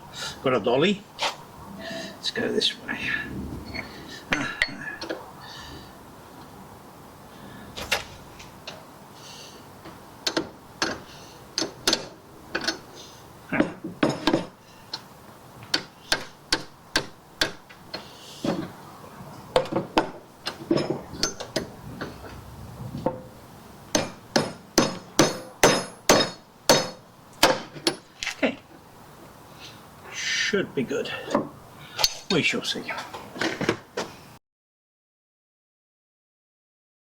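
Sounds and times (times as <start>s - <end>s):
hammer tapping metal: 13.6s - 14.6s, 15.7s - 17.8s, 19.6s - 21.7s, 23.9s - 28.1s.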